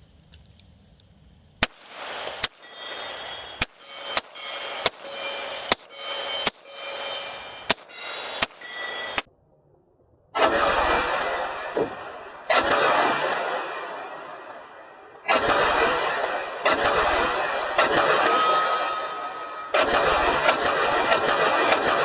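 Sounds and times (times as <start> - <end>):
pistol shots: 1.6 - 9.2, 10.4 - 22.0
faint ringing tones: 2.6 - 9.4, 18.1 - 19.8.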